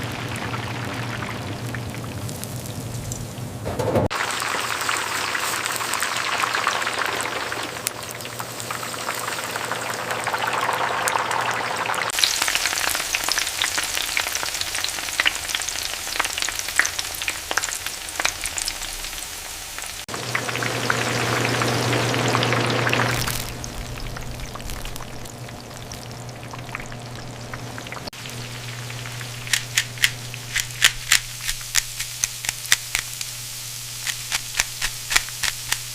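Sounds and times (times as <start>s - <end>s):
food sizzling in hot oil: 0.0s - 35.9s
low steady hum: 23.0s - 35.9s.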